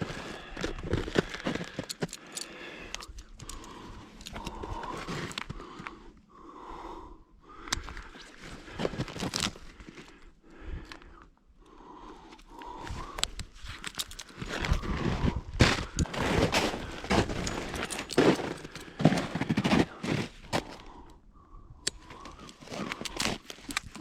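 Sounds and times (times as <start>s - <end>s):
crunching footsteps: 0.0s - 5.9s, 12.7s - 21.0s, 22.0s - 24.0s
person breathing hard: 0.0s - 24.0s.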